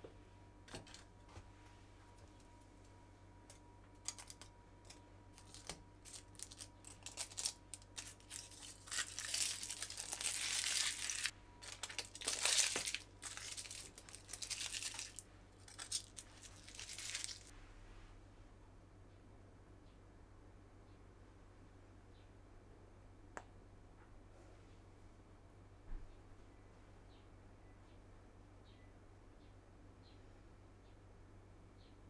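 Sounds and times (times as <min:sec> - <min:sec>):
crinkling and rustling: 0:03.9 - 0:17.5.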